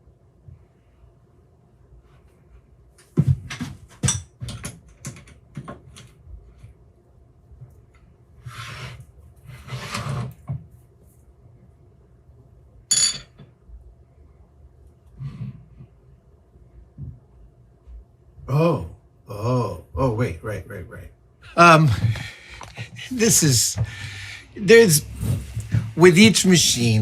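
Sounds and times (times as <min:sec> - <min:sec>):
metal rubbing or sliding: 0:08.4 - 0:10.3, 0:24.7 - 0:27.0
metal tools knocking and clinking: 0:12.9 - 0:13.4
sharp ringing clink: 0:12.9 - 0:13.4.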